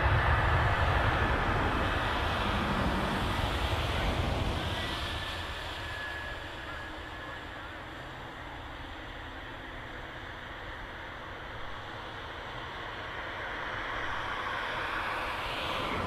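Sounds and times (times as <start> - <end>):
jet engine rush: 0.0 - 8.2, 13.3 - 16.0
faint thin whine: 0.1 - 16.0.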